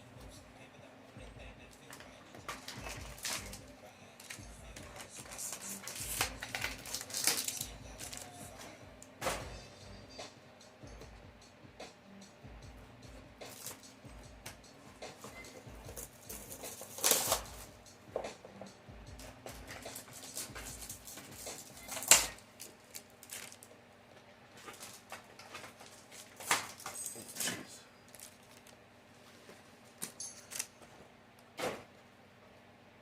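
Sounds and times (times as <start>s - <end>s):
foil and cardboard crinkling: 1.7s - 8.6s, 15.3s - 17.7s, 19.7s - 23.7s, 24.6s - 29.6s.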